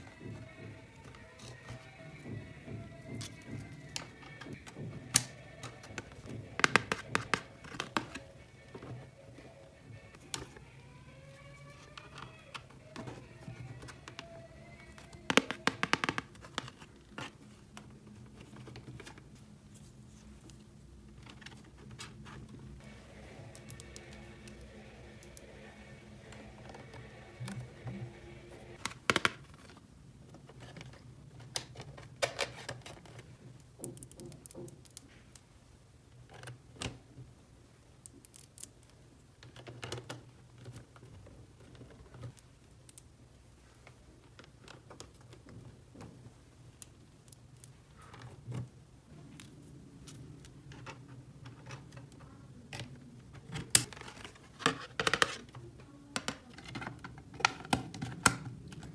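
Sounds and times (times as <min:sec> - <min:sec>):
toy pieces clicking and tapping: 0:00.1 - 0:08.3, 0:10.0 - 0:16.8.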